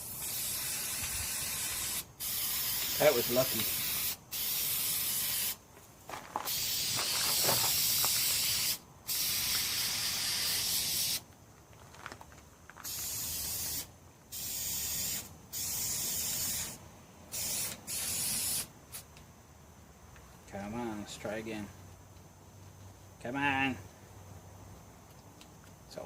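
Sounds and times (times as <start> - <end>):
aerosol spray can hissing: 0.0 - 5.6, 6.5 - 11.2, 12.8 - 19.1.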